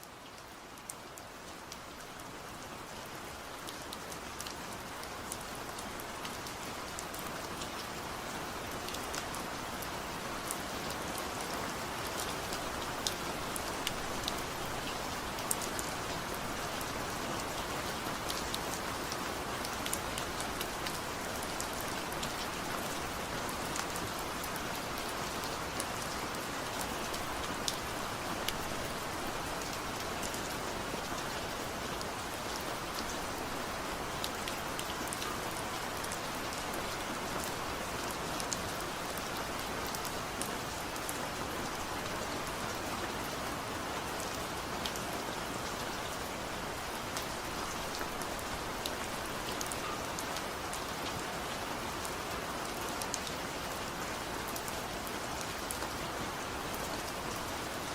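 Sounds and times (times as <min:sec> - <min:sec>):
steady rain with ticking drops: 0:00.0 - 0:57.9.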